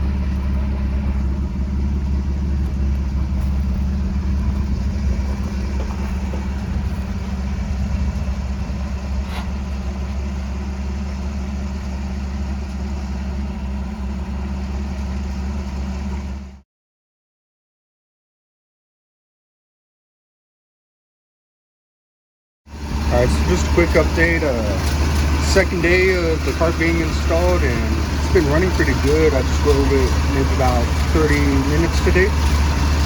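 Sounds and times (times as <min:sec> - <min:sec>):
truck engine droning: 0:00.0 - 0:16.6, 0:22.7 - 0:33.0.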